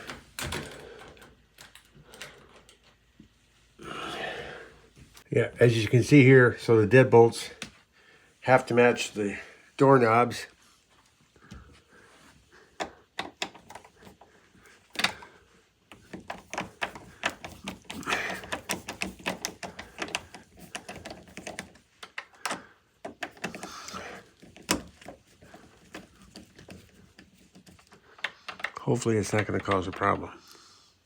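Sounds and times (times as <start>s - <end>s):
door lock clicking and rattling: 15.9s - 23.7s.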